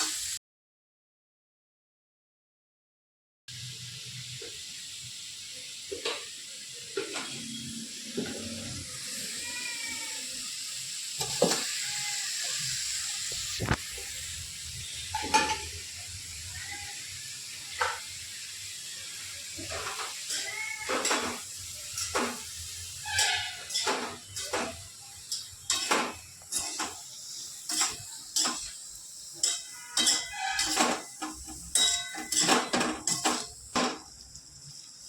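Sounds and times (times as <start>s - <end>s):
food sizzling in a pan: 0.0s - 0.4s, 3.5s - 35.0s
spoon knocking and scraping pan: 7.0s - 7.4s, 11.2s - 11.8s, 15.1s - 15.8s, 17.7s - 18.1s, 19.6s - 28.8s, 29.4s - 34.1s.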